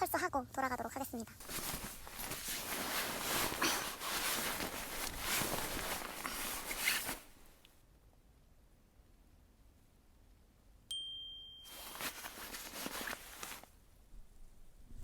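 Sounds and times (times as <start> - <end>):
fabric rustling and scraping: 1.4 - 7.7, 11.7 - 13.8.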